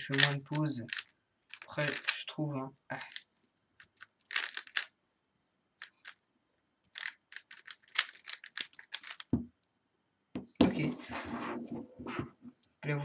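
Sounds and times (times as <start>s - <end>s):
puzzle cube clicking as turned: 0.0s - 2.2s, 3.0s - 4.9s, 5.8s - 6.2s, 6.8s - 9.3s.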